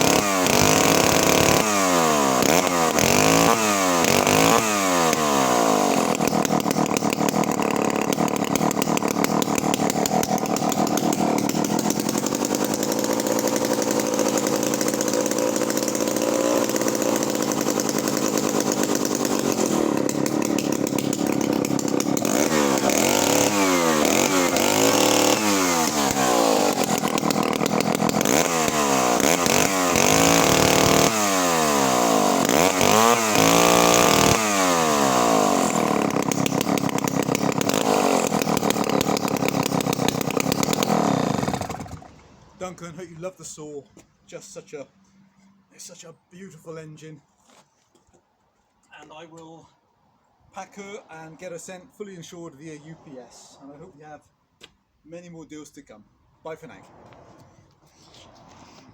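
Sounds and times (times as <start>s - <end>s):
chainsaw engine revving: 0.0s - 42.9s.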